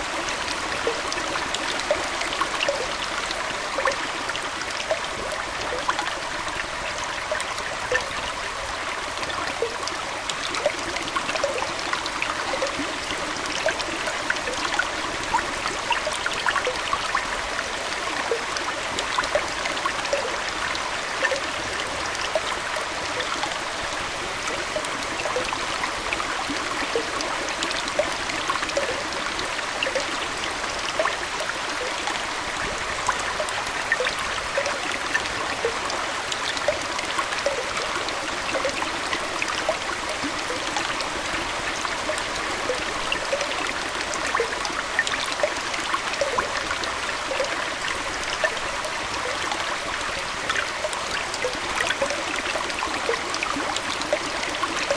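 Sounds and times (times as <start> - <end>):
small plops and bubbles: 0.0 - 6.2, 7.3 - 8.4, 9.1 - 54.9
aquarium water trickling: 0.0 - 54.9.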